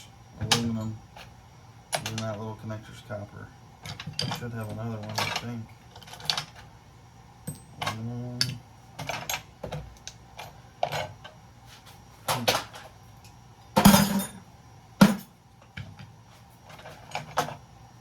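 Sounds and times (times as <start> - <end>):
metal scrap clinking and clattering: 13.8 - 14.4.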